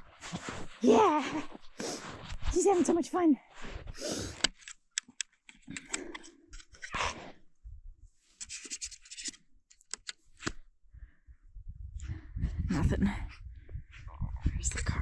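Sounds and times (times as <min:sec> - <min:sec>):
plastic clicks: 0:08.5 - 0:10.6.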